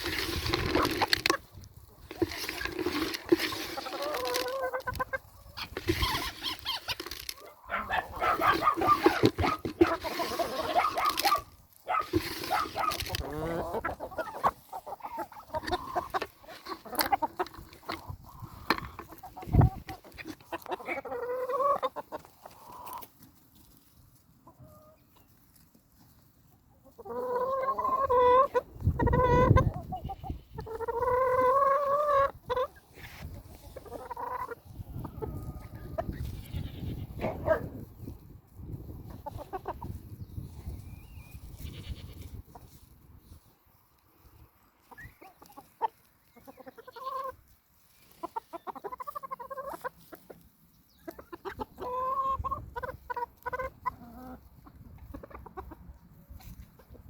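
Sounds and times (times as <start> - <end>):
chickens clucking: 0.0 - 57.0.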